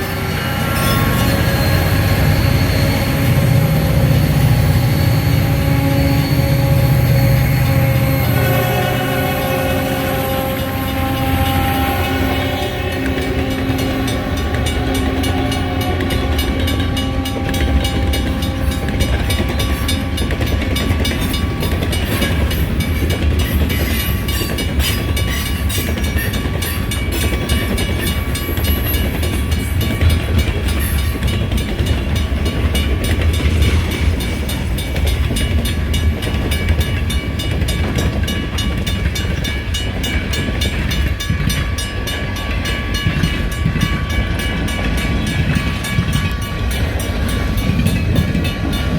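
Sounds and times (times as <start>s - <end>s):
crossing bell ringing: 0.0s - 48.9s
freight train rumbling: 0.0s - 48.9s.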